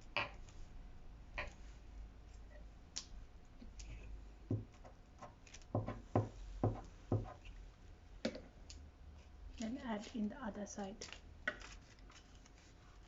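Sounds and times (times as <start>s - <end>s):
paper rustling: 11.0s - 13.0s.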